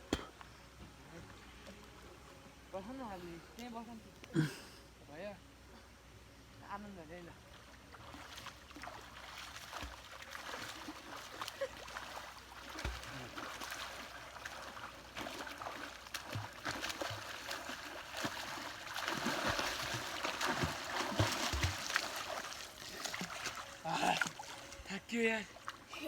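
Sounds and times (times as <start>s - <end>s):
water splashing from swimming: 7.5s - 26.0s.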